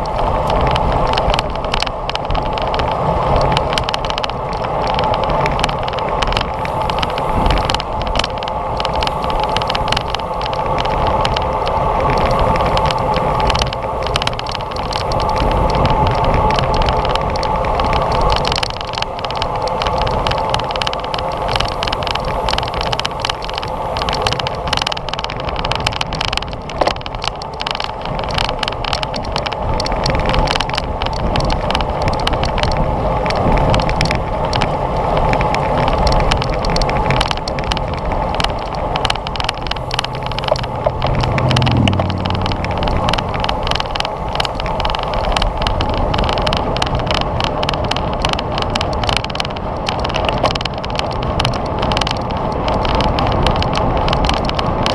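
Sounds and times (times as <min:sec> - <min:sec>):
bicycle clicks and rattles: 0:00.0 - 0:54.9
tyre-on-road noise: 0:00.0 - 0:54.9
wind rushing: 0:37.7 - 0:46.2
low hum: 0:38.0 - 0:45.0.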